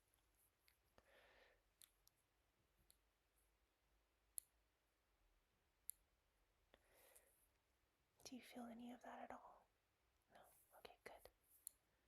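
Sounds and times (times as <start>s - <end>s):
soft breath: 1.0s - 1.8s, 6.7s - 7.5s
faint sharp clicks: 1.8s - 2.2s.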